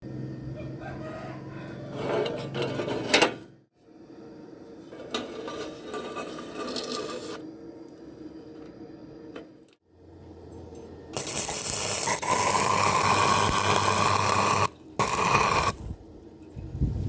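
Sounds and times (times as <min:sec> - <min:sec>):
welding arc crackling sizzle: 0:11.1 - 0:16.0.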